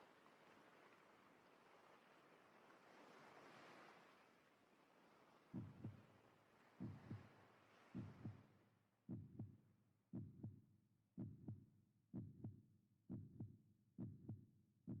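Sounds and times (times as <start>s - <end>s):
faint heartbeat: 5.6s - 6.0s, 6.8s - 7.3s, 8.0s - 8.4s, 9.1s - 10.6s, 11.2s - 15.0s.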